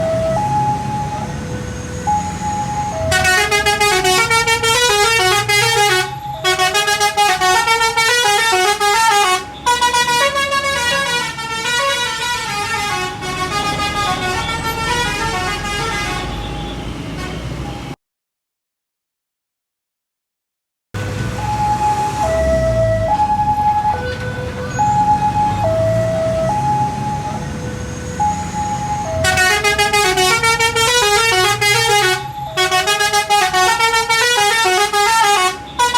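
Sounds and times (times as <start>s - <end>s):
bus rumble: 0.0s - 18.0s, 21.0s - 35.9s
musical bus horn tune: 2.4s - 17.9s, 28.2s - 35.9s.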